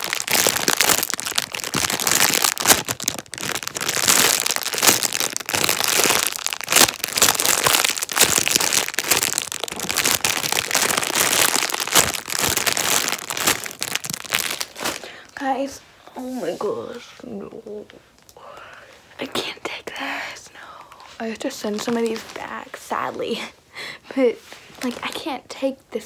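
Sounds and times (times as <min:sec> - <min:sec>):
plastic packaging crinkling: 0:00.0 - 0:15.2, 0:21.5 - 0:23.0.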